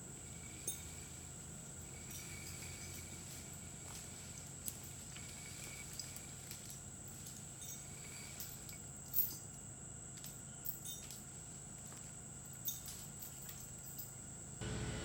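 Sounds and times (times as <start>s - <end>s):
low hum: 14.6s - 15.0s.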